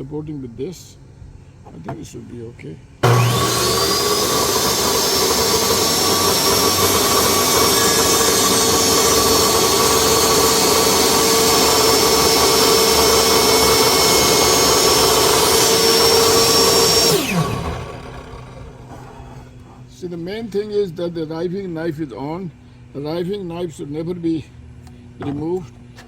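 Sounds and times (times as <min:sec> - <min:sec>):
table saw whining: 0:03.0 - 0:19.9.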